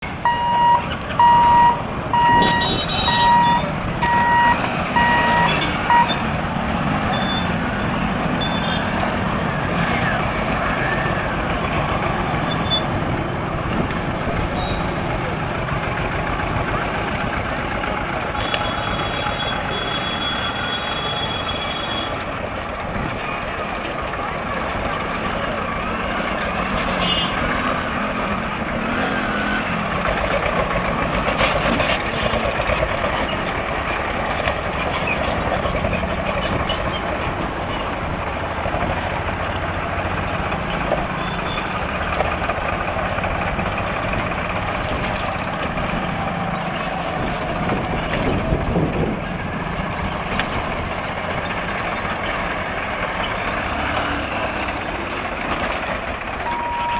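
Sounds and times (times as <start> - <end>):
road traffic: 0.0 - 56.9
vehicle horn beeping: 0.3 - 6.2, 8.4 - 8.9, 18.4 - 22.2, 27.0 - 27.4.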